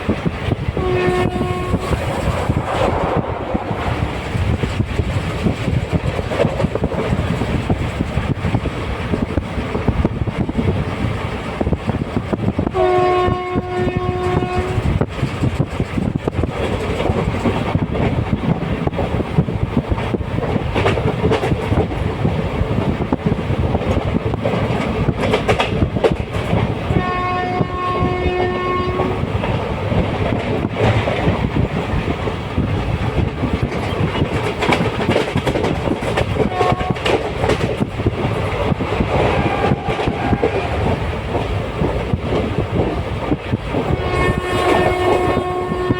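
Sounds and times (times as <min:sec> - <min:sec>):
train wheels clattering on rails: 0:00.0 - 0:45.9
train horn blasts: 0:00.8 - 0:02.4, 0:12.7 - 0:14.9, 0:26.9 - 0:29.3, 0:36.4 - 0:37.2, 0:39.2 - 0:41.0, 0:43.9 - 0:45.9.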